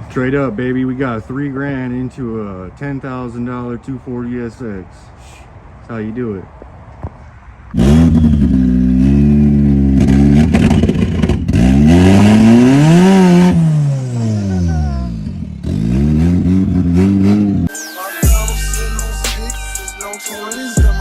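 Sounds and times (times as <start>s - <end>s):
car engine revving: 7.7s - 17.7s.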